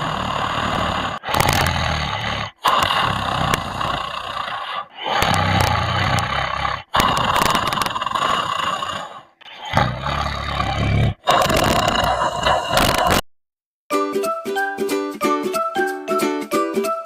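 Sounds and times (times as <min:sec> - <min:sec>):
pig snoring: 0:00.0 - 0:13.2.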